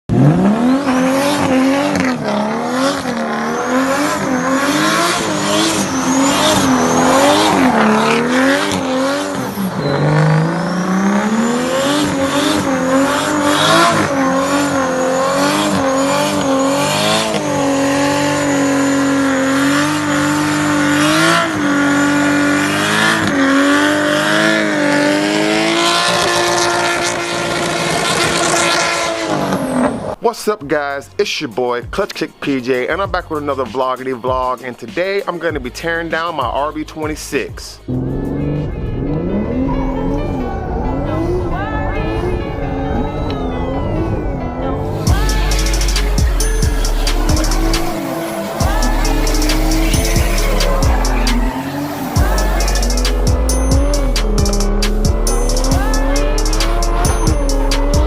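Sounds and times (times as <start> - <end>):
car engine revving high: 0.1 - 30.2, 37.8 - 58.0
tyre squeal: 0.5 - 30.2, 45.0 - 58.0.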